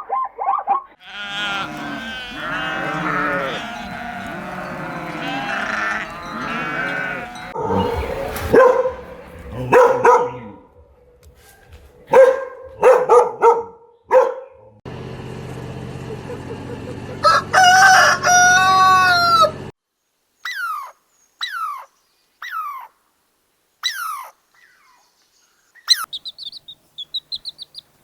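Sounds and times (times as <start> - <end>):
flock bleating: 1.0 - 7.6.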